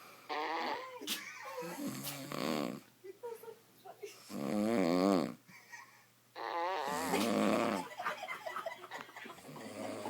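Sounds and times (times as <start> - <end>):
man snoring heavily: 6.5 - 7.8, 9.6 - 10.0.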